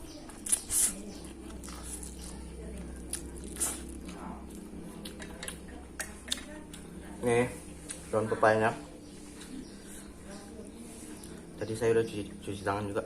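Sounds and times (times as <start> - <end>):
person chewing: 0.3 - 6.8.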